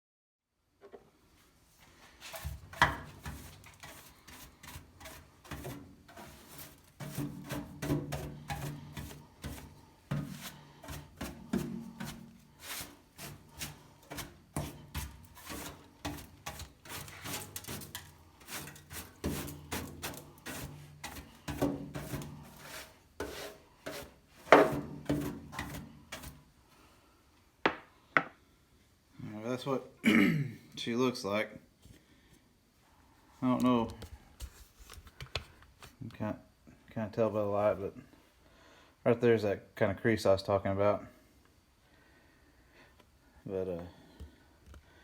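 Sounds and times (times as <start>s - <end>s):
hand scraping steel seat pan: 2.3s - 26.3s.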